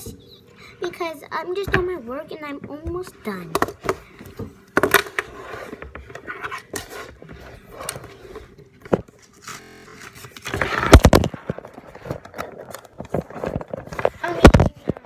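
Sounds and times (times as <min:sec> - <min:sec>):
handling taps rustles and scrapes: 0:02.6 - 0:09.4, 0:10.3 - 0:15.0.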